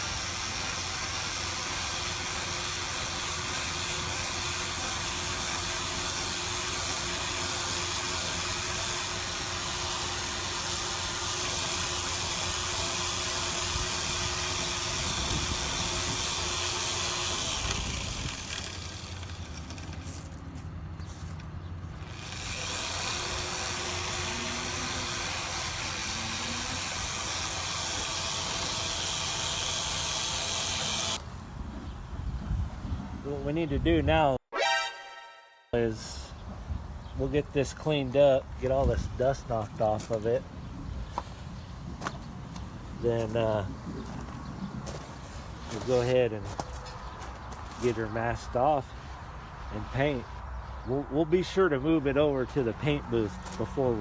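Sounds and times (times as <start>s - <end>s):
orbital sander running: 0.0s - 19.9s, 21.9s - 31.2s.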